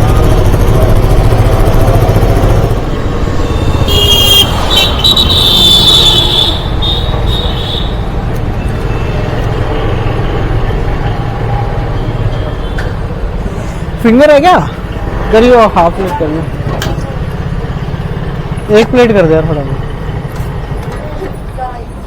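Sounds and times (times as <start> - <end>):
road traffic rumble: 0.0 - 22.0
high-pitched vehicle horn blasts: 3.5 - 8.1.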